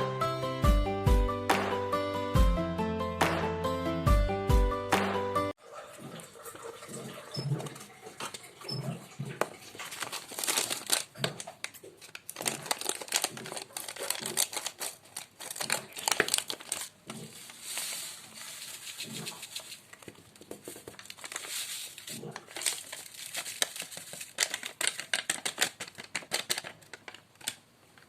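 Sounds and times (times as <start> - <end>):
plastic packets crinkling: 9.6 - 28.0.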